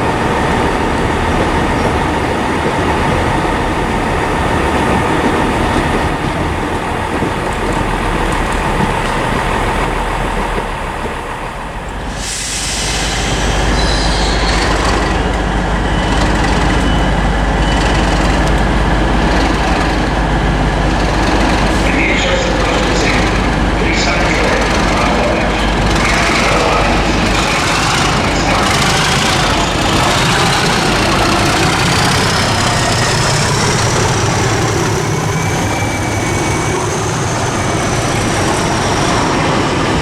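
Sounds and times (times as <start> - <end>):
train running on track: 0.0 - 40.0
brief high squeals: 12.3 - 15.2
low engine drone: 14.5 - 40.0.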